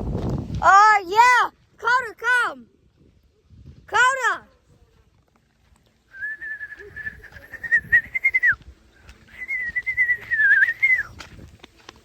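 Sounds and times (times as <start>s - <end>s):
person whistling: 6.1s - 8.6s, 9.3s - 11.2s.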